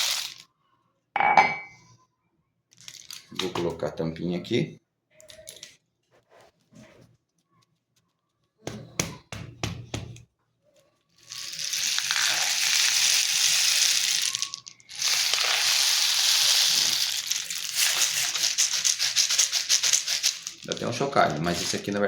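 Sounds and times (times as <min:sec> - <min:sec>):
kernels cascading in rain stick: 0:00.0 - 0:00.4, 0:11.2 - 0:22.0
rain stick rattling: 0:00.0 - 0:00.4, 0:11.2 - 0:22.0.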